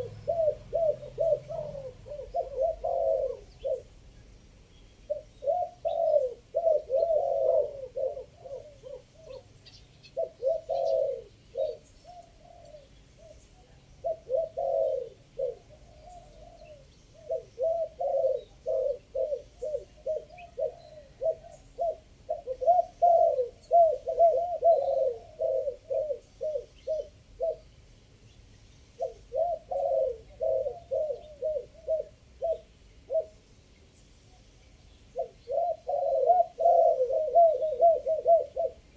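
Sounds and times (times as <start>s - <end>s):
dove cooing: 0.0s - 4.1s, 5.0s - 27.7s, 29.0s - 33.5s, 35.1s - 38.9s.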